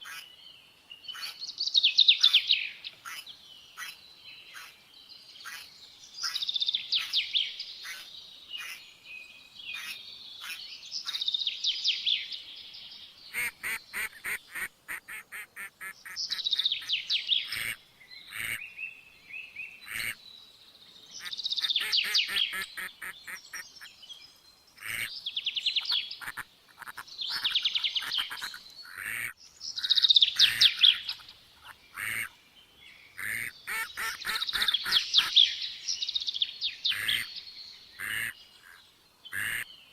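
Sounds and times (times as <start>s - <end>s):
small birds trilling: 13.3s - 20.3s, 21.0s - 39.9s.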